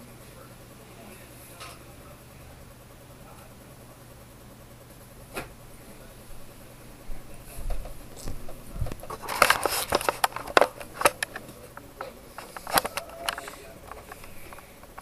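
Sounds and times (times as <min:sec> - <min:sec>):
paper rustling and crackling: 0:07.6 - 0:15.0.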